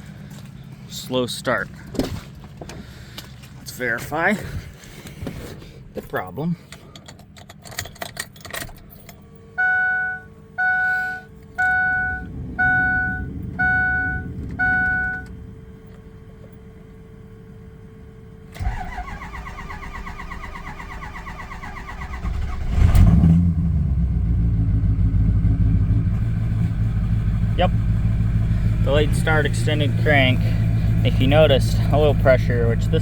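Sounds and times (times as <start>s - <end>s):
diesel engine idling: 0.0s - 6.0s, 9.5s - 33.0s
beeps: 9.6s - 15.4s
diesel engine cranking on starter: 11.4s - 17.5s, 18.4s - 33.0s.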